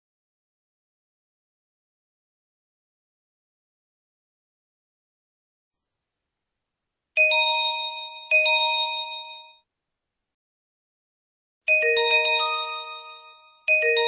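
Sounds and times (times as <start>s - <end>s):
bell-like notification chimes: 7.2s - 9.6s, 11.7s - 14.0s
quick run of bell-like notes: 11.7s - 14.0s.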